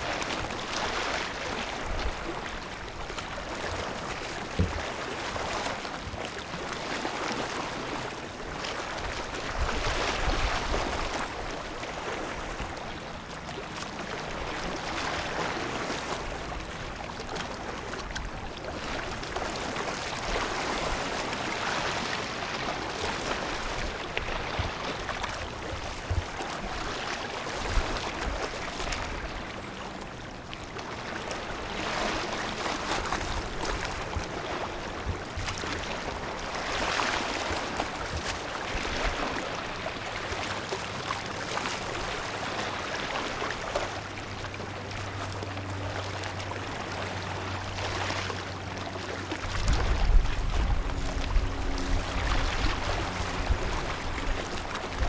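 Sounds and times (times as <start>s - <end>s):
low rumbling: 49.5s - 55.0s.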